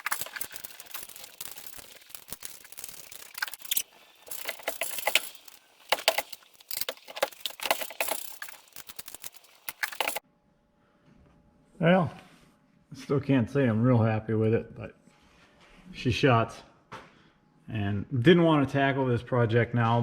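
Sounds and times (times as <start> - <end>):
metallic clinking of tools: 0.0 - 10.2.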